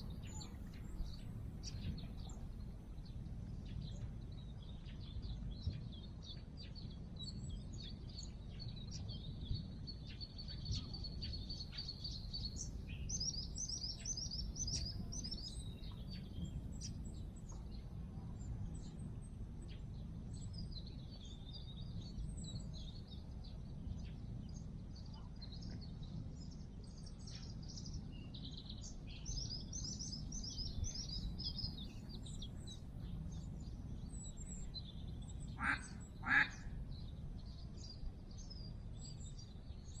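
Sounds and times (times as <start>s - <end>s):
low background rumble: 0.0s - 40.0s
songbirds singing: 0.0s - 40.0s.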